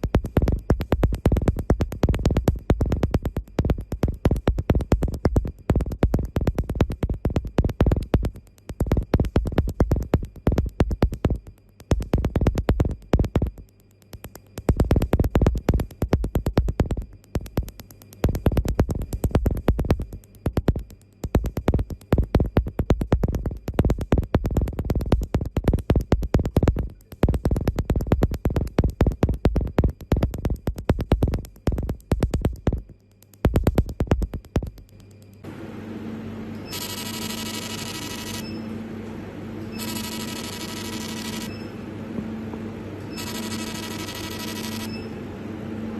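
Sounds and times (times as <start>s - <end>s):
laser snapping pulses: 0.0s - 35.4s
faint machine hum: 0.0s - 45.9s.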